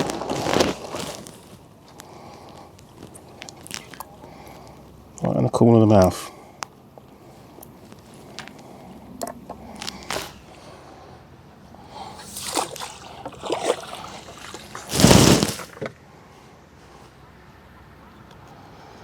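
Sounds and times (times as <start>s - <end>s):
water sloshing and splashing: 12.0s - 15.9s.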